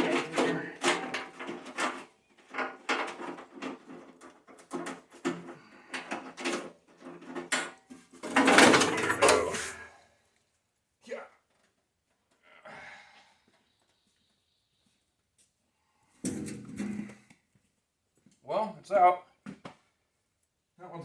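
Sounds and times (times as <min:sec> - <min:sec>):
sheet metal knocks and rattles: 0:00.0 - 0:05.5, 0:06.1 - 0:09.9
scraping metal clatter: 0:00.0 - 0:09.9.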